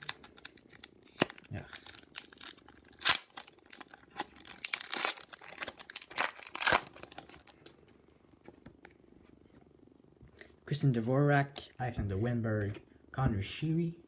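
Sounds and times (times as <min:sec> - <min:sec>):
wrapper crinkling and tearing: 0:00.0 - 0:07.7.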